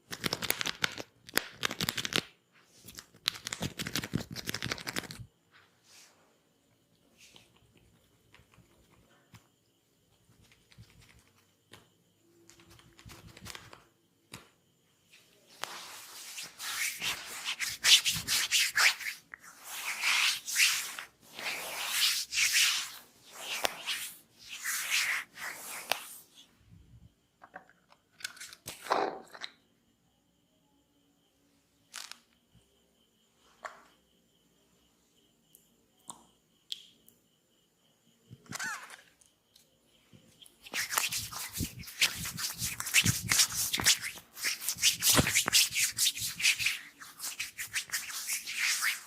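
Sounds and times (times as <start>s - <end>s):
hands rubbing skin: 2.9s - 5.2s, 15.1s - 26.3s, 40.6s - 49.0s.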